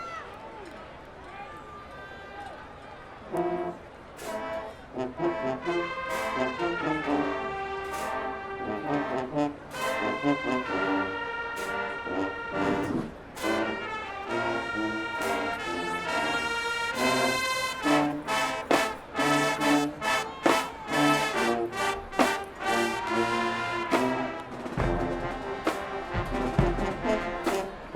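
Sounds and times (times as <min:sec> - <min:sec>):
marching band brass playing: 0:03.3 - 0:27.9
drum strikes: 0:23.9 - 0:27.8.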